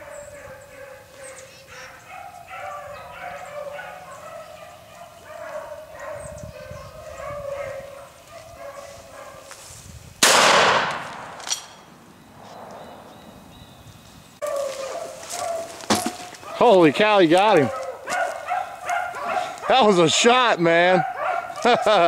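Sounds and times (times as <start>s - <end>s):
dogs baying: 0.0s - 9.6s, 14.4s - 22.0s
gunshot: 10.2s - 11.8s.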